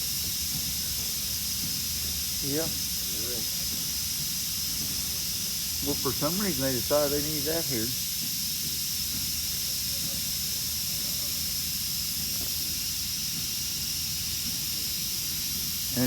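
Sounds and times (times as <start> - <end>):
sawmill machinery running: 0.0 - 11.0.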